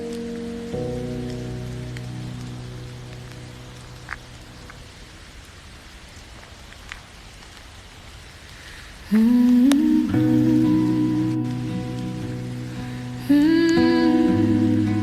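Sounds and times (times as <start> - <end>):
soft instrumental music: 0.0 - 4.2, 9.2 - 15.0
rain drop ticks: 0.0 - 15.0
steady rain: 0.0 - 15.0
song held notes: 9.2 - 15.0.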